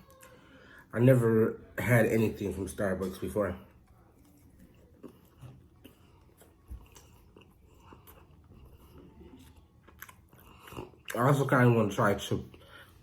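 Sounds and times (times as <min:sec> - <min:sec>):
person chewing food: 0:03.5 - 0:11.6
soft mouth clicks and smacks: 0:03.8 - 0:11.2.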